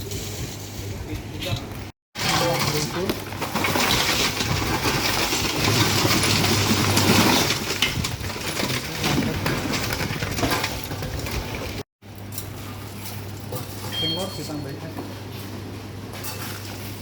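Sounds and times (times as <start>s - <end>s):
ice rattling and crunching: 2.2s - 11.8s.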